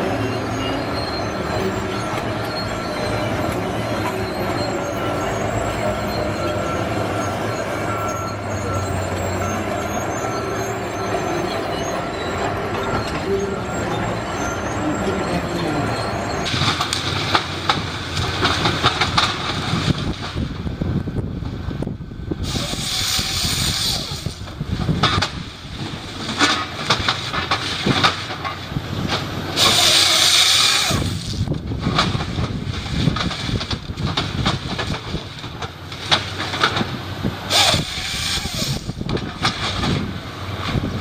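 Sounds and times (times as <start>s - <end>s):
machinery running: 0.0s - 41.0s
bursts of hiss: 22.4s - 24.3s.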